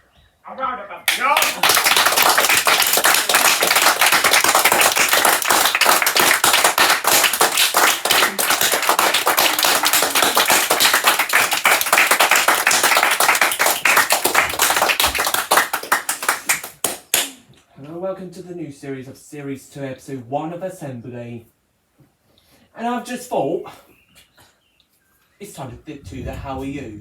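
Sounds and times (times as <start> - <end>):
crowd applauding: 1.1 - 17.4.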